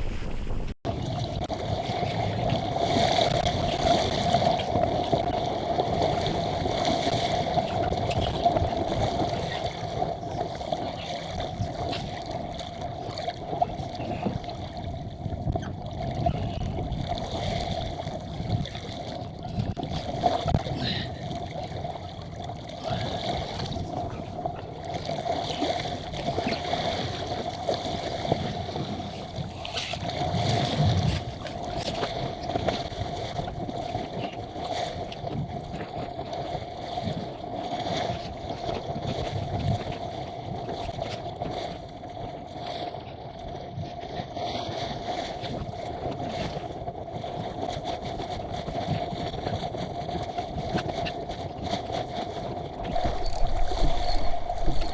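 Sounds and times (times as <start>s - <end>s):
steady hum: 0.0s - 0.8s, 53.0s - 54.9s
wind noise: 0.0s - 4.9s, 52.9s - 54.9s
water rushing along hull: 0.0s - 54.9s.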